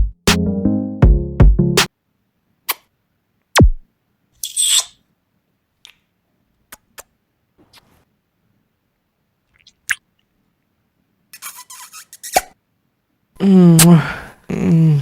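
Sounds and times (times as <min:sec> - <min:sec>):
synth and drum machine hits: 0:00.0 - 0:01.9, 0:03.6 - 0:03.8.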